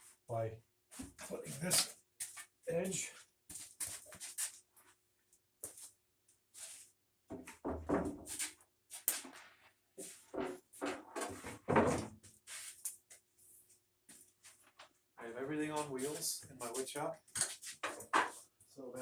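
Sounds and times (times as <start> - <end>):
plywood sheet knocking and scraping: 7.3 - 8.5, 10.3 - 12.2.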